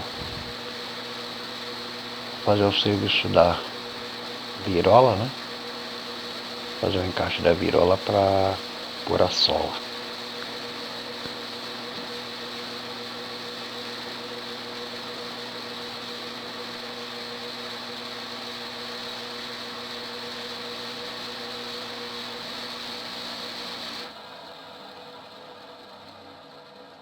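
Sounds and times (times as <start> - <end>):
lathe motor humming: 0.0 - 25.1.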